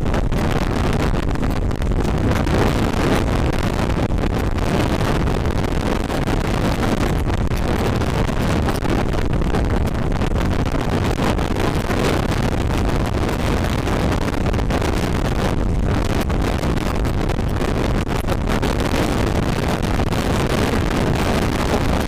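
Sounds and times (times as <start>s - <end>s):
wind buffeting microphone: 0.0s - 22.0s.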